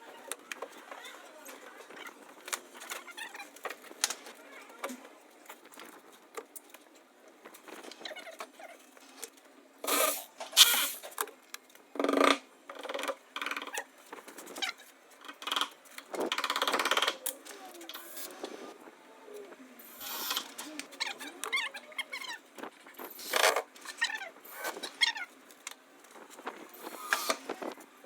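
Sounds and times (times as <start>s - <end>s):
short noisy bursts: 9.8s - 11.0s.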